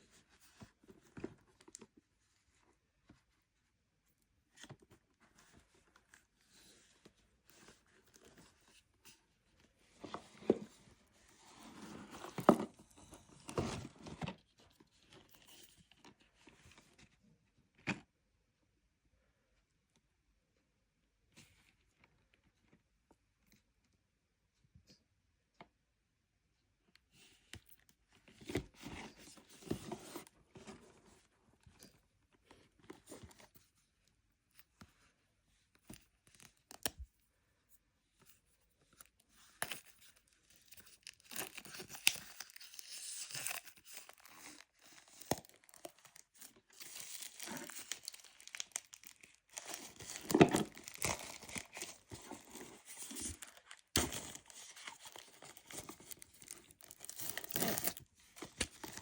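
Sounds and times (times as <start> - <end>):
plastic packaging tearing and crinkling: 40.7 - 59.0.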